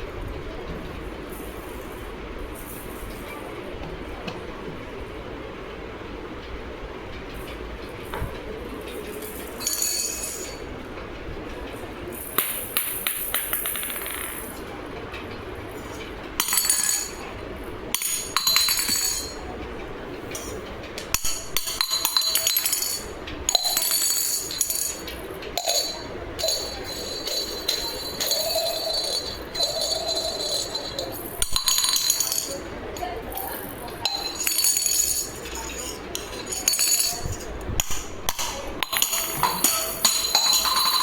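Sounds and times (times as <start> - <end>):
metal utensils clinking: 8.9 - 10.7, 15.7 - 19.6, 20.3 - 41.0.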